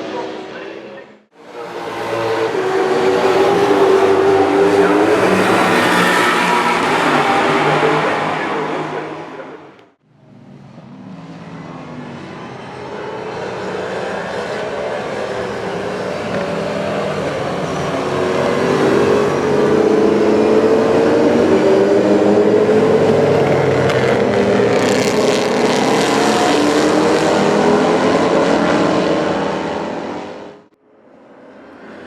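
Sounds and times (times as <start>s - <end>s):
racing cars passing by: 0.0s - 32.0s.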